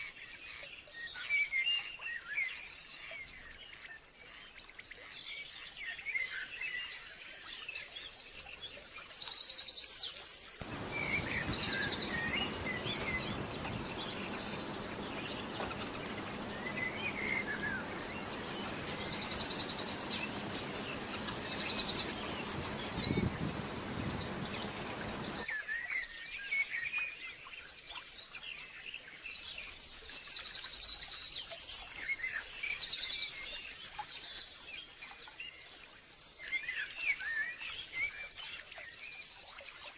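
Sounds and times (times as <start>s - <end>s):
bird trills: 10.6s - 25.4s
birds chirping: 10.6s - 25.5s
steady rushing noise: 10.6s - 25.5s.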